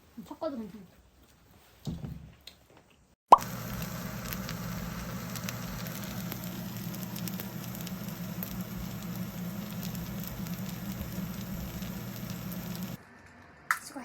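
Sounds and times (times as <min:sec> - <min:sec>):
food sizzling in a pan: 0:03.4 - 0:13.0
low hum: 0:03.4 - 0:13.0.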